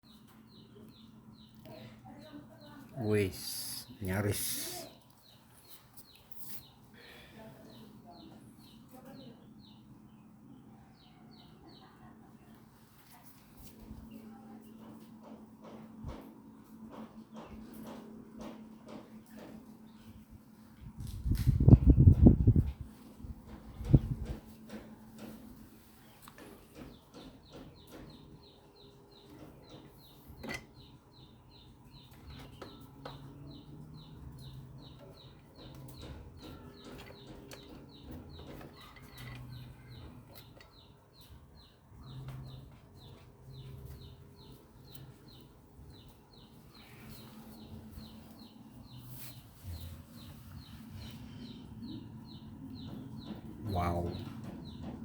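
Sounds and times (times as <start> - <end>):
rapid bird chirping: 23.8 - 55.0.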